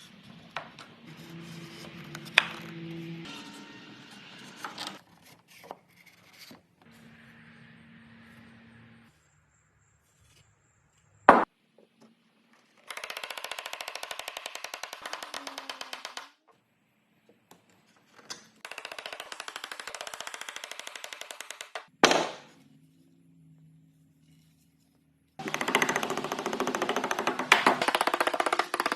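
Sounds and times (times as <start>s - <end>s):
power tool chattering: 25.4s - 28.9s.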